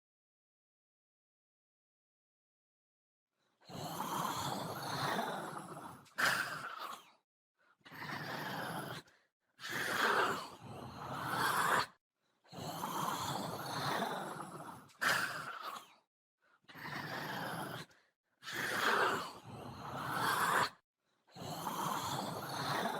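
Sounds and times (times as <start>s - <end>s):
sharp snarls: 3.7s - 7.2s, 7.9s - 16.0s, 16.7s - 20.8s, 21.4s - 22.9s.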